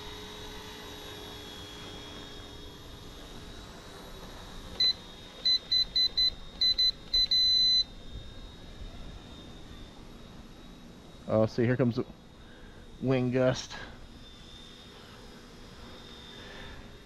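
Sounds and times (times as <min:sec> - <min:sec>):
faint high whine: 0:00.0 - 0:17.0
short electronic beeps: 0:04.8 - 0:07.9.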